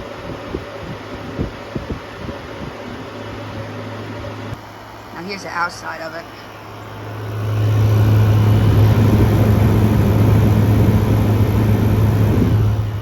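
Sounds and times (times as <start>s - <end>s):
air conditioner compressor hum: 0.0s - 13.0s
condenser fan rushing: 0.0s - 13.0s.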